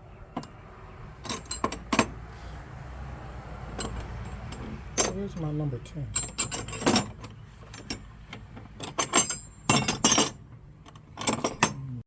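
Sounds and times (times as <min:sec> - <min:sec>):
metal hand tools clinking: 0:01.2 - 0:02.2, 0:03.8 - 0:08.0, 0:08.8 - 0:10.4, 0:11.2 - 0:12.0.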